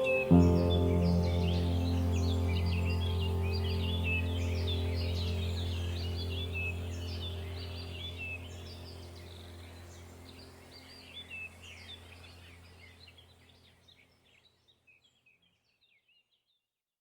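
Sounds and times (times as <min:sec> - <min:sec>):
low hum: 0:00.0 - 0:13.0
birds chirping: 0:00.0 - 0:13.8.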